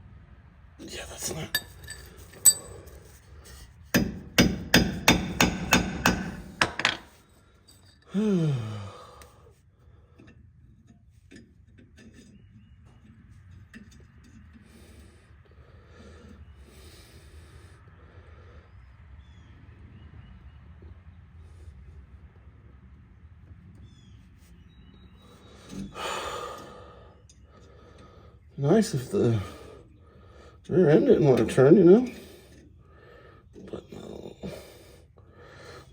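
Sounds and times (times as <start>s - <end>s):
hammer striking metal: 4.0s - 7.0s
man groaning: 8.1s - 9.0s.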